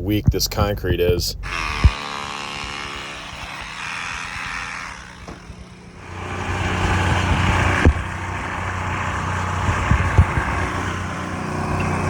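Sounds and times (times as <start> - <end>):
engine running: 0.0 - 12.0
sharp knocks: 1.0 - 8.1.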